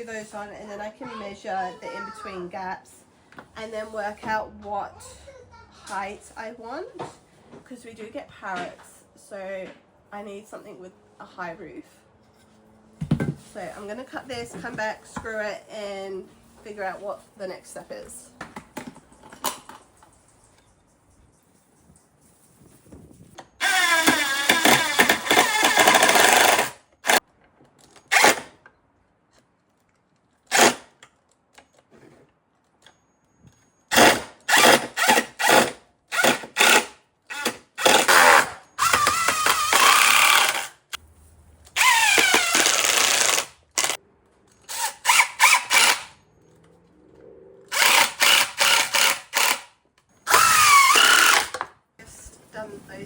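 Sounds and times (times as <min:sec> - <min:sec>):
power drill driving screws into wood: 0:23.6 - 0:27.2, 0:28.0 - 0:28.6, 0:30.5 - 0:31.0, 0:33.9 - 0:41.0, 0:41.8 - 0:44.0, 0:44.6 - 0:46.2, 0:47.7 - 0:51.7.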